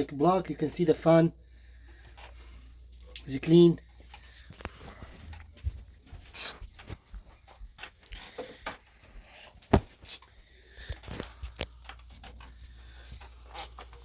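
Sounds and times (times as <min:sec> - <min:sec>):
hands handling plastic parts: 0:09.6 - 0:14.0.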